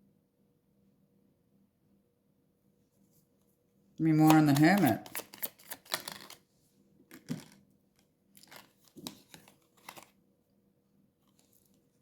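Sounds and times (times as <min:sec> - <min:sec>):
cards rustling and flicking: 0:04.0 - 0:06.5, 0:07.1 - 0:07.6, 0:08.4 - 0:10.2.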